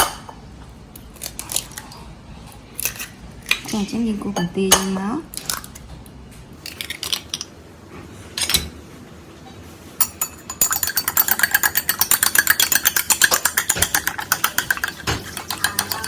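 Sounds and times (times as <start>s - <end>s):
metal utensil clinking against pot: 10.0s - 16.0s.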